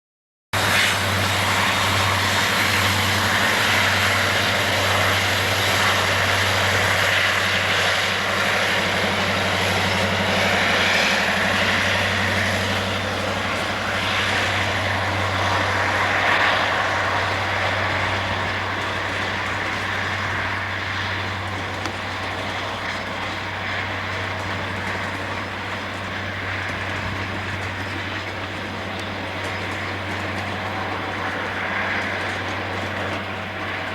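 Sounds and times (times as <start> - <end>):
diesel locomotive engine drone: 0.6 - 33.9.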